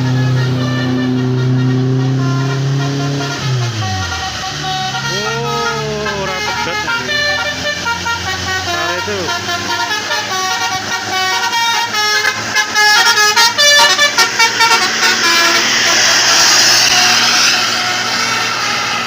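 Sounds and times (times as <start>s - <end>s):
bus horn playing melody: 0.0s - 19.0s
broad rushing noise: 0.1s - 19.0s.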